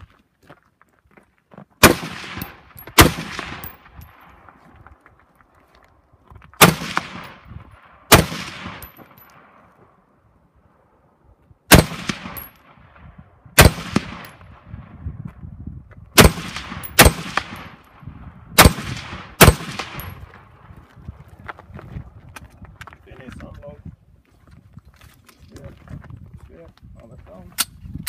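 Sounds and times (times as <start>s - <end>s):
rifle shots with echo: 1.8s - 4.3s, 6.6s - 9.6s, 11.7s - 15.0s, 16.2s - 20.3s.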